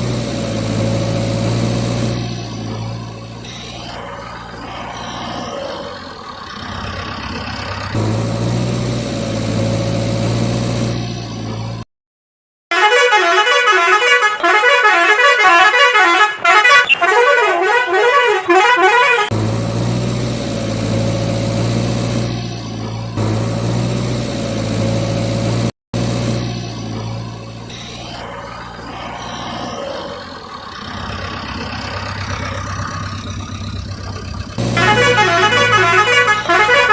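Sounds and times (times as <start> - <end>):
vehicle engine hum: 0.0 - 11.8, 12.7 - 36.9
warbling vehicle horn: 12.7 - 19.3, 34.8 - 36.9.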